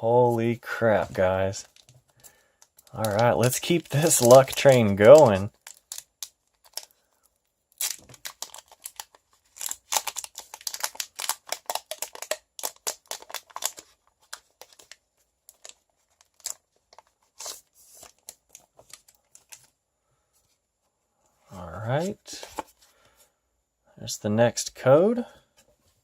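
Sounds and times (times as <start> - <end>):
foil wrapper crinkling and tearing: 1.6 - 19.7.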